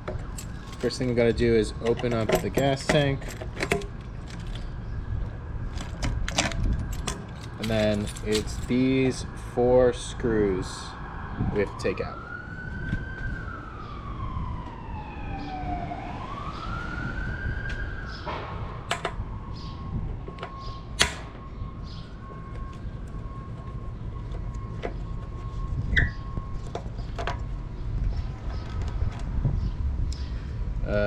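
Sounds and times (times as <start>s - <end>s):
siren wailing: 0.0s - 30.1s.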